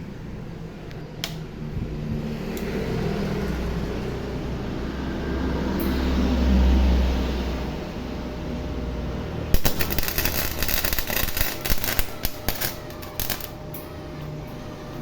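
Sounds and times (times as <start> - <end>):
click: 0.9 - 1.4
welder wire-feed motor humming: 8.8 - 14.1.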